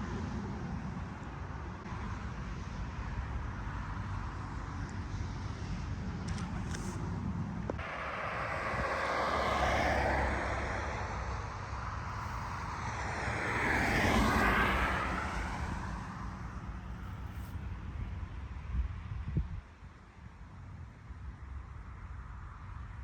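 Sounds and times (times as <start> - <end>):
passing engine rushing: 7.8 - 17.6.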